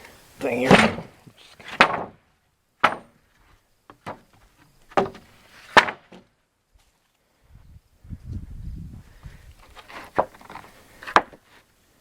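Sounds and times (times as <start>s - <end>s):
wooden boards knocking: 1.7s - 2.2s, 2.8s - 3.2s, 3.9s - 6.3s.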